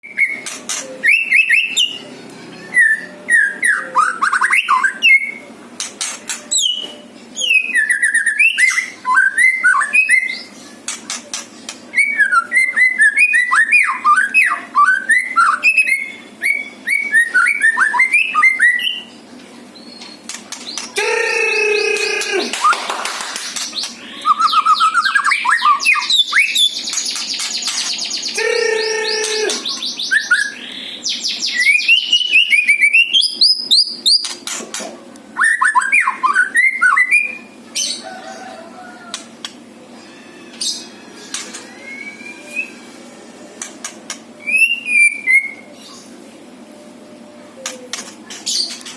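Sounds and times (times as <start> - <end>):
bird singing whistles and trills: 2.6 - 5.4, 6.5 - 10.5, 11.9 - 19.1, 23.6 - 34.3, 41.6 - 42.9, 44.4 - 45.9.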